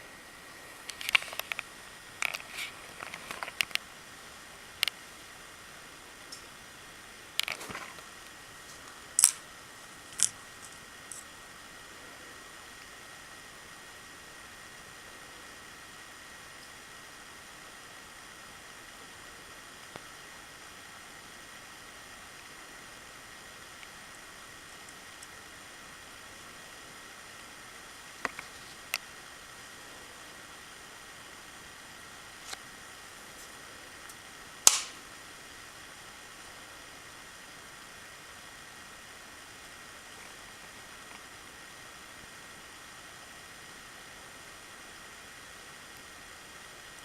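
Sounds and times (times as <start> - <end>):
faint steady hiss: 0.0 - 47.0
thin high whine: 0.0 - 47.0
sharp clicks and taps: 34.7 - 34.9.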